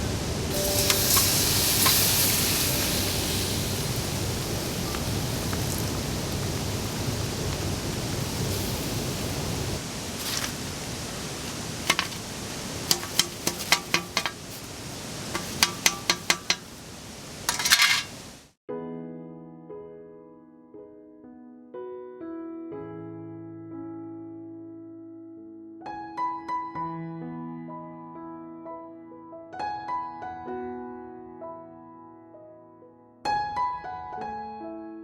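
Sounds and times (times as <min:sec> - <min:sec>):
heavy rain hissing: 0:00.0 - 0:18.5
campfire snaps and crackles: 0:00.1 - 0:18.5.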